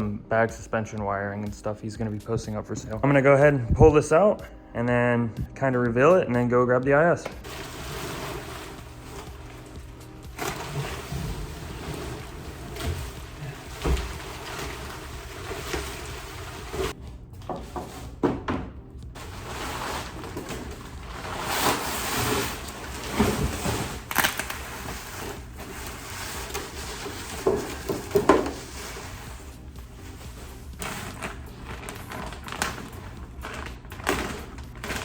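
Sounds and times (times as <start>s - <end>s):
packaging scraping and rustling: 7.4s - 17.0s, 19.2s - 35.0s.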